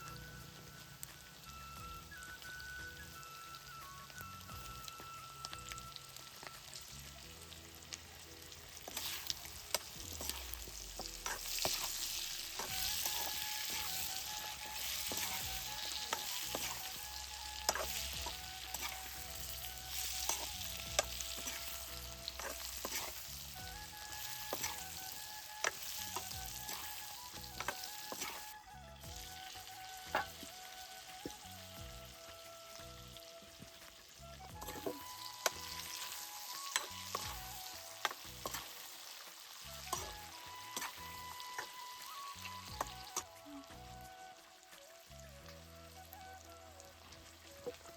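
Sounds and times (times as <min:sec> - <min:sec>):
meat sizzling in a pan: 0:00.0 - 0:47.9
spatula scraping and knocking pan: 0:08.9 - 0:16.9, 0:17.6 - 0:19.2, 0:22.3 - 0:23.2, 0:24.2 - 0:24.9.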